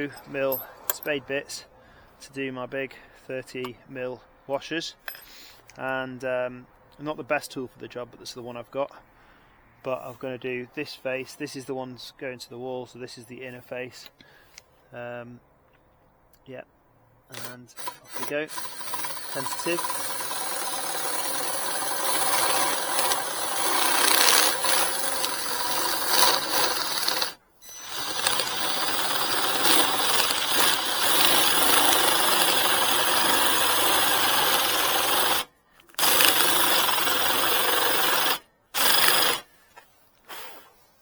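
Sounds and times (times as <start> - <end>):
cordless drill boring into wood: 17.3 - 39.5.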